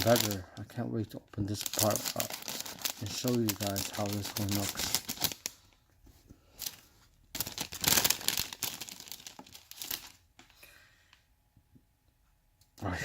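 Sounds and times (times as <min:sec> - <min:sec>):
plastic bag crinkling: 0:00.0 - 0:00.6, 0:01.4 - 0:05.8, 0:06.6 - 0:10.3.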